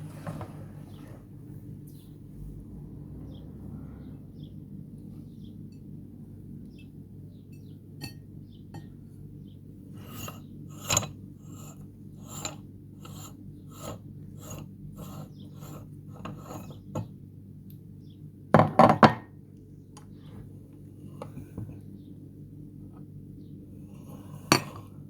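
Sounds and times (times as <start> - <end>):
meat grinder rasping: 10.1 - 16.7.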